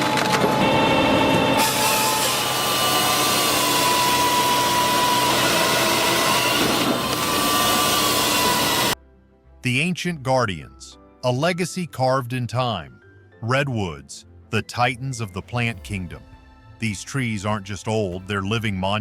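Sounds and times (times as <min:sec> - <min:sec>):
machinery running with whine: 0:00.0 - 0:09.0.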